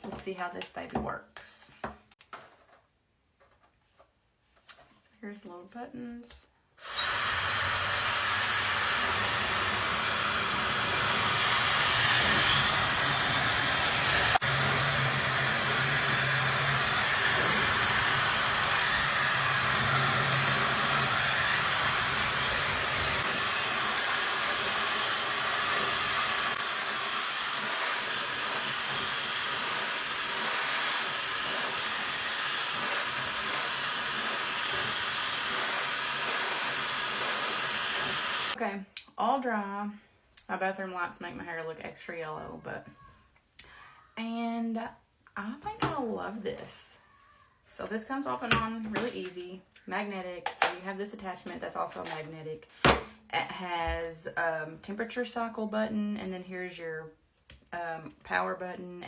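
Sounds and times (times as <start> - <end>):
hair dryer blowing: 6.8 - 38.6.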